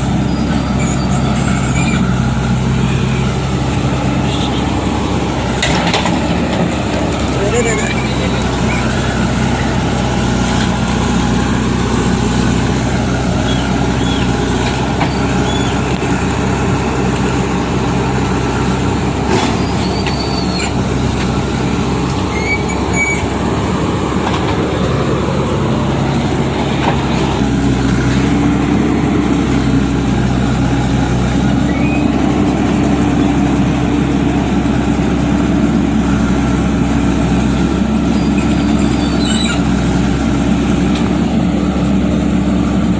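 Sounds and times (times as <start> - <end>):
diesel engines running: 0.0 - 42.9
short high squeals: 0.2 - 2.0, 15.0 - 15.8, 19.6 - 20.8, 22.3 - 23.4, 38.1 - 39.7.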